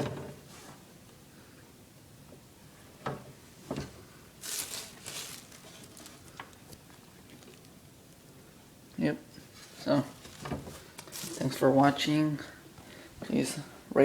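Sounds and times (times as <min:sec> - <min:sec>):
packaging rustling: 0:04.4 - 0:07.8, 0:09.5 - 0:11.6.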